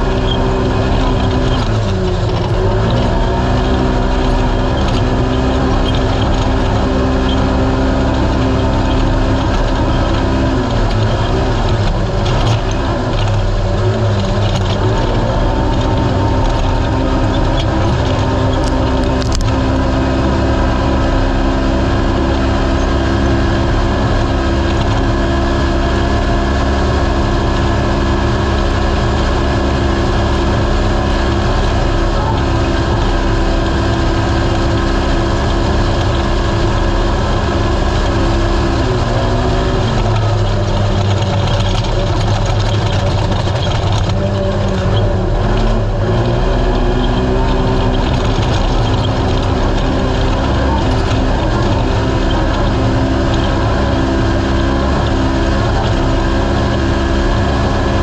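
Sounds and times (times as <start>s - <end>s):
engine running hard: 0.0s - 58.0s.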